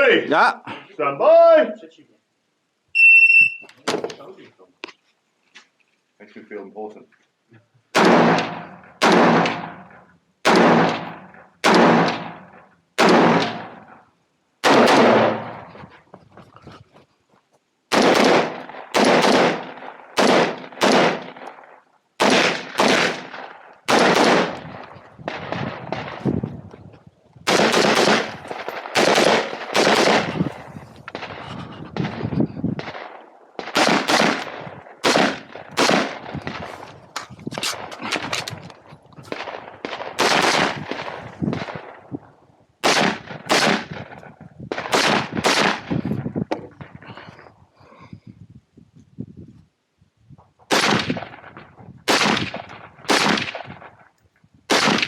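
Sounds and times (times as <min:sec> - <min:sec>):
rifle shots echoing: 0:07.9 - 0:14.0, 0:14.6 - 0:15.7, 0:17.9 - 0:26.3, 0:27.5 - 0:36.8, 0:39.3 - 0:42.2, 0:42.8 - 0:46.0, 0:50.7 - 0:54.1, 0:54.7 - 0:55.0.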